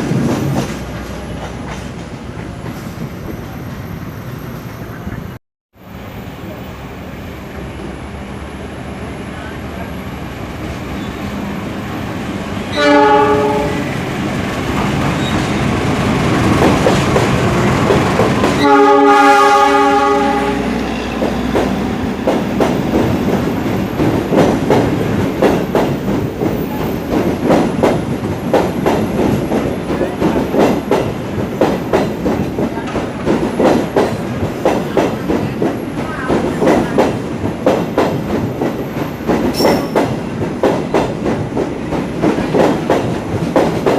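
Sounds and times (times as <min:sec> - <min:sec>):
train wheels clickety-clack: 0:00.0 - 0:03.9, 0:14.6 - 0:20.0, 0:21.1 - 0:43.9
train horn blasts: 0:12.7 - 0:14.0, 0:18.6 - 0:21.2.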